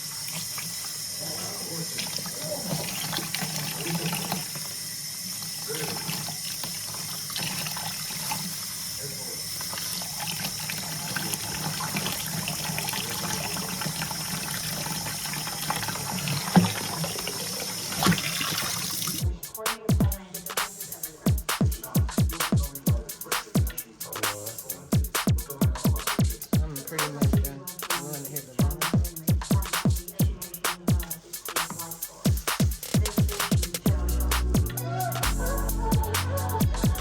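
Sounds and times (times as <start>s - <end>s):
tap water running into sink: 0.0s - 19.2s.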